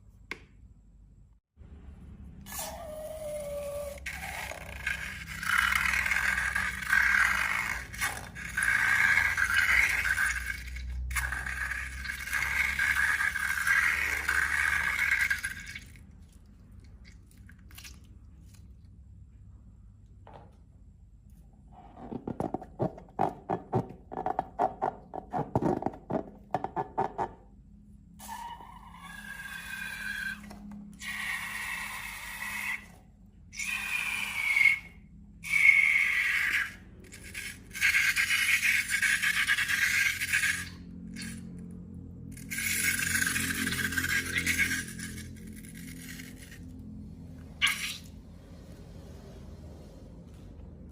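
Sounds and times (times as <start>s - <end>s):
squealing hissing air bursts: 47.6s - 48.1s.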